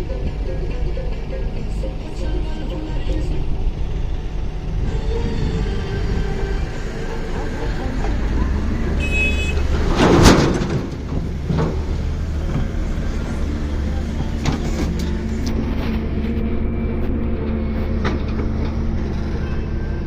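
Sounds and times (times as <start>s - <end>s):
excavator engine running: 0.0s - 20.0s.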